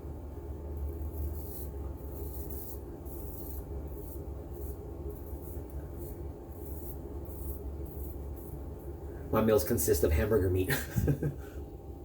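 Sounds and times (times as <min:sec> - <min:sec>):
steady low hum: 0:00.0 - 0:12.0
razor scraping stubble: 0:00.8 - 0:09.0.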